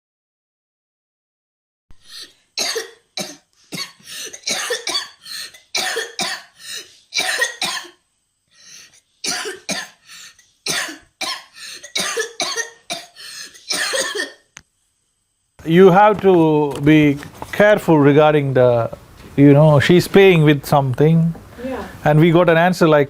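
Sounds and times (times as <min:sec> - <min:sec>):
person coughing: 0:02.1 - 0:08.0, 0:09.3 - 0:10.0, 0:10.7 - 0:14.5.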